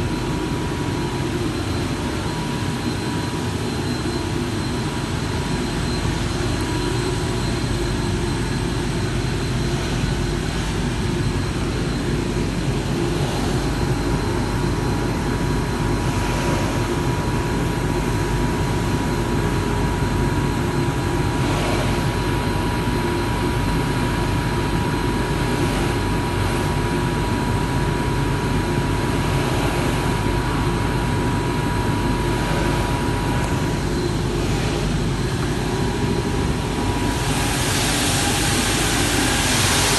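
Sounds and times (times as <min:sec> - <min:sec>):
grinding machine humming and whining: 0:00.0 - 0:39.9.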